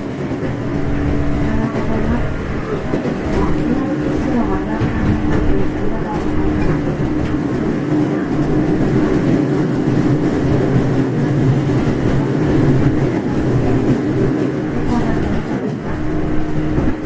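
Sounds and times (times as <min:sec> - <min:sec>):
train wheels rumbling on rail: 0:00.0 - 0:17.0.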